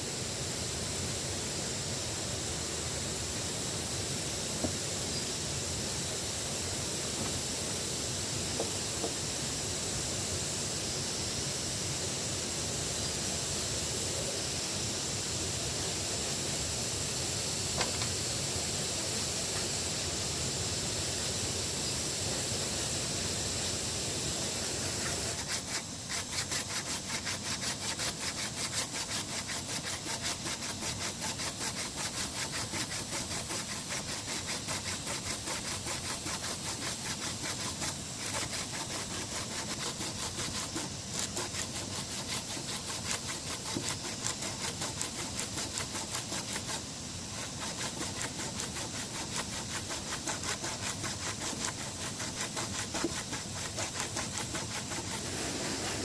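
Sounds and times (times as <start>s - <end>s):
outdoor background hiss: 0.0s - 56.0s
hand saw cutting: 24.5s - 56.0s.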